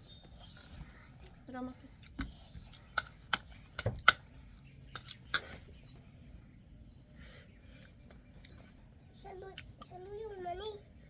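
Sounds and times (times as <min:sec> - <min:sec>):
sharp clicks and knocks: 0:02.1 - 0:04.2.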